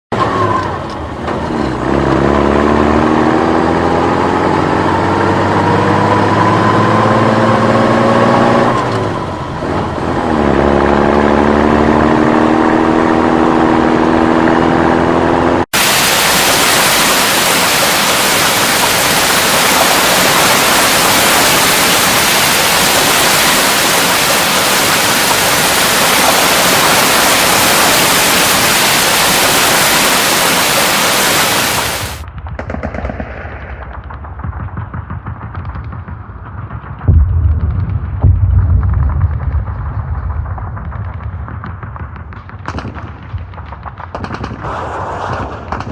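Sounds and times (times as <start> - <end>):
vehicle engine accelerating: 0.2 - 15.6
steady rushing hiss: 15.8 - 32.2.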